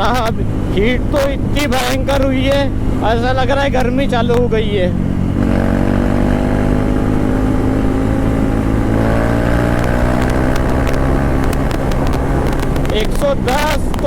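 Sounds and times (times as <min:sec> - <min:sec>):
motorcycle engine running loud: 0:00.0 - 0:14.0
sharp clicks: 0:09.0 - 0:14.0.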